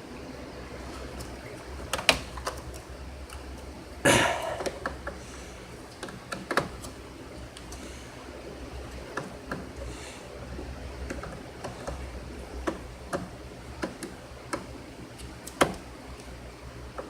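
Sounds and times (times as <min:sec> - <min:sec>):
clicks and knocks of parts: 0:01.2 - 0:03.4, 0:05.9 - 0:07.8.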